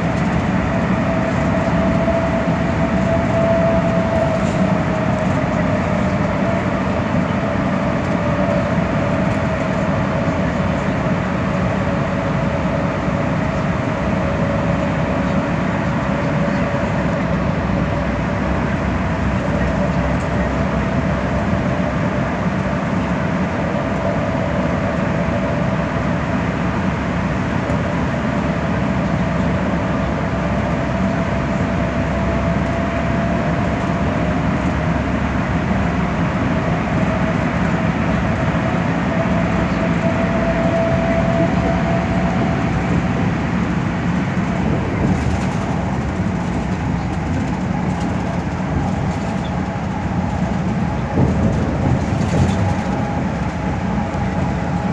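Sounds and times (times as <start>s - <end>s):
bus road and drivetrain noise: 0.0s - 54.9s.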